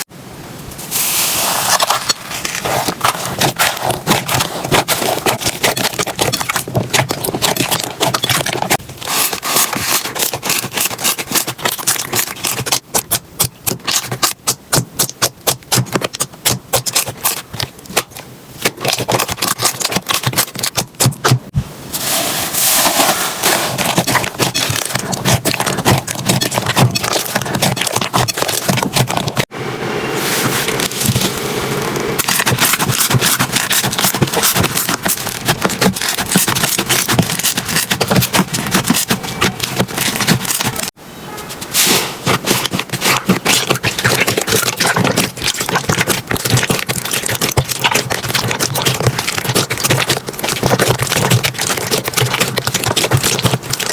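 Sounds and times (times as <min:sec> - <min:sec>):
slime crackling and popping: 0:01.4 - 0:21.5, 0:23.4 - 0:29.5, 0:32.2 - 0:41.0, 0:42.2 - 0:53.9.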